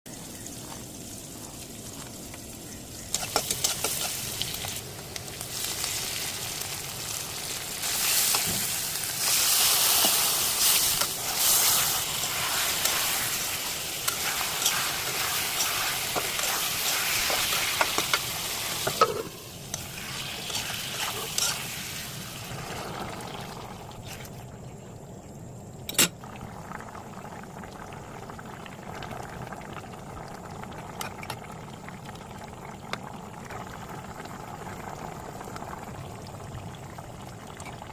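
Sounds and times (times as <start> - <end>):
curry sizzling in a pan: 0.1 - 24.2.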